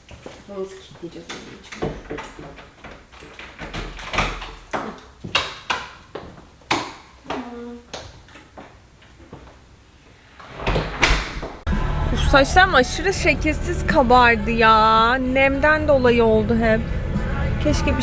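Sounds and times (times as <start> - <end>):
door lock and keys clicking: 1.3 - 7.0
door thumps: 1.3 - 9.6, 10.5 - 11.7.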